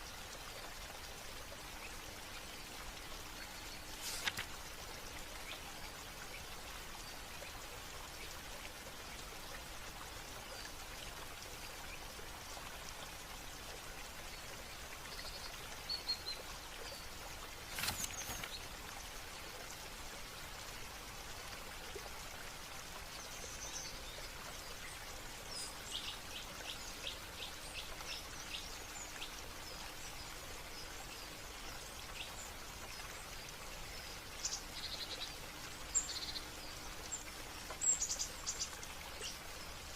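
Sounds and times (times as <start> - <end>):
running splashing water: 2.6 - 5.2, 17.4 - 19.0.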